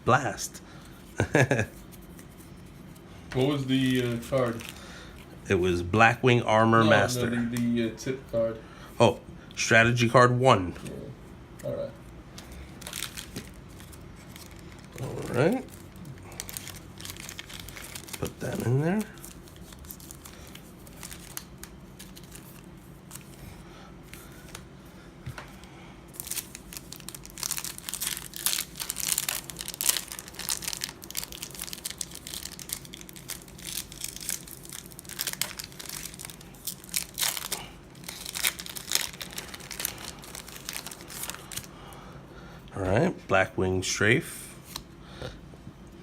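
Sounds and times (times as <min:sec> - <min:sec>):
low steady hum: 0:00.0 - 0:46.0
wrapper crinkling and tearing: 0:03.4 - 0:05.1, 0:12.8 - 0:23.4, 0:26.1 - 0:41.7.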